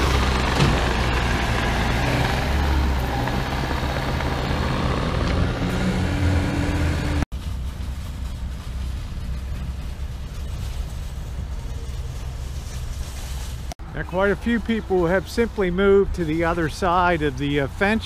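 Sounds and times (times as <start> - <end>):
heavy machinery engine running: 0.0 - 12.3.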